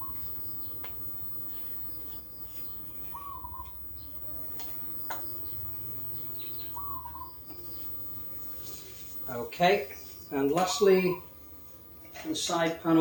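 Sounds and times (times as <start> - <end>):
bird whistled call: 3.1 - 3.7.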